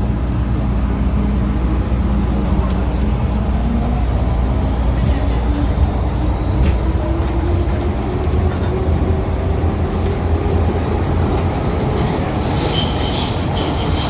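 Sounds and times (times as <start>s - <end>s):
metro train rumbling on track: 0.0s - 14.0s
wheel squeal: 12.3s - 14.0s.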